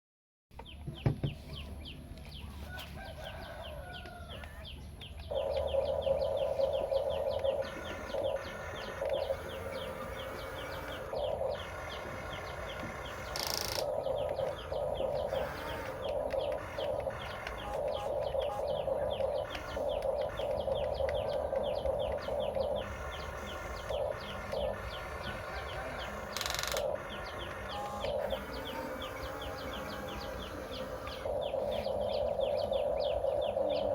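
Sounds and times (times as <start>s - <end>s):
bird chirps: 0.6s - 33.9s
toy excavator motors whining: 3.0s - 33.9s.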